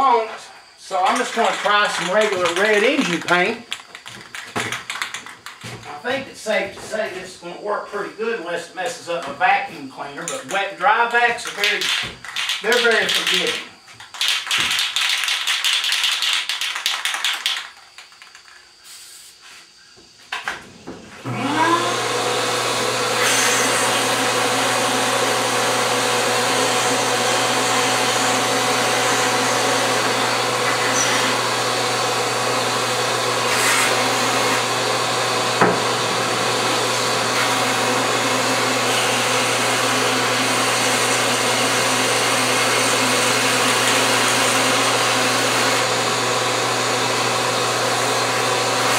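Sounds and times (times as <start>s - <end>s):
shop vacuum motor running: 0.0s - 7.3s, 11.2s - 13.6s, 21.1s - 48.9s.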